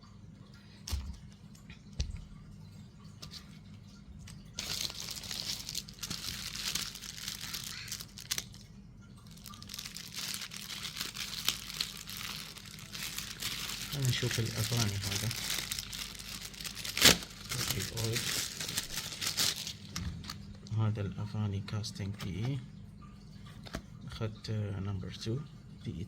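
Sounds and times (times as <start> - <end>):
plastic packaging crinkling: 4.6 - 20.7.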